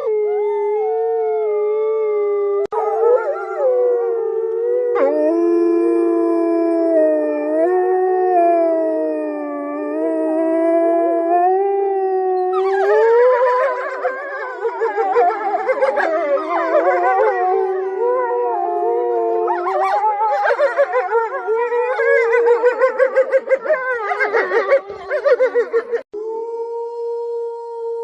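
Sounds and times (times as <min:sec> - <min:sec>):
wolves howling: 0:00.0 - 0:27.2.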